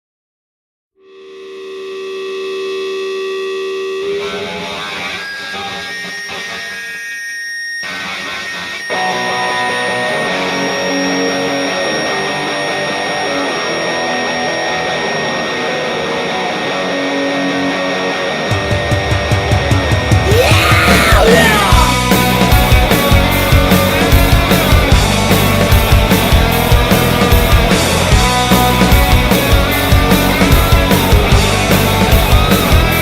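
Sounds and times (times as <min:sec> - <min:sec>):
distorted electric guitar: 0:01.0 - 0:33.0
low pounding drum beat: 0:18.7 - 0:33.0.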